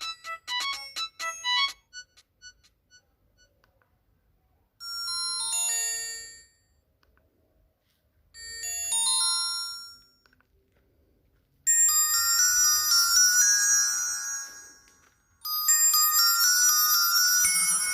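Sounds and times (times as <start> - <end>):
phone ringtone chiming notes: 0.0 - 3.5, 11.7 - 17.9.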